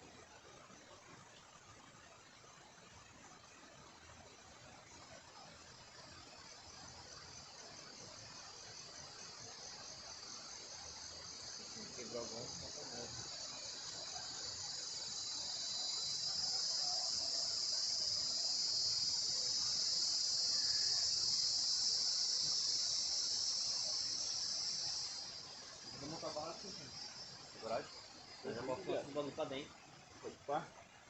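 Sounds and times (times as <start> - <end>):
insect buzzing call: 5.8 - 30.2.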